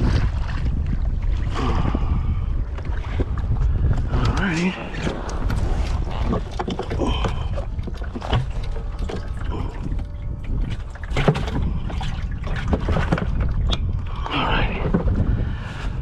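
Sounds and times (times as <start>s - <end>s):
wind rumble on microphone: 0.0s - 16.0s
kayak knocks and clicks: 2.6s - 15.3s.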